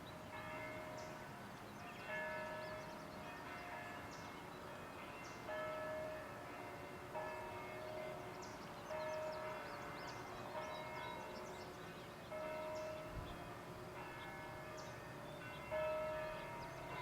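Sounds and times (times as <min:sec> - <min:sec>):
church bell ringing: 0:00.0 - 0:17.0
birds chirping: 0:07.4 - 0:17.0.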